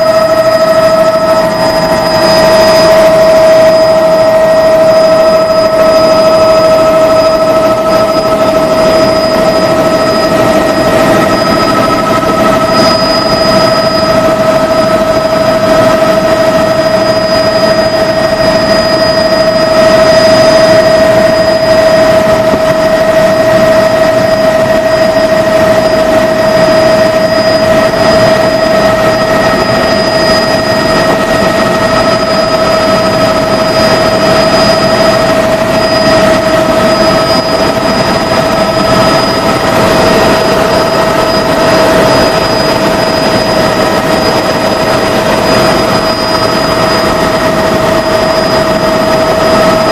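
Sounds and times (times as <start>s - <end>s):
helicopter engine and rotor: 0.0s - 49.9s.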